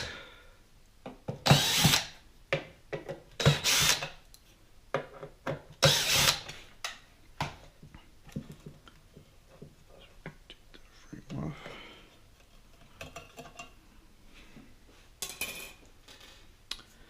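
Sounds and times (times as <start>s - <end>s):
cordless drill running: 1.5s - 2.2s, 3.4s - 4.1s, 5.8s - 6.5s.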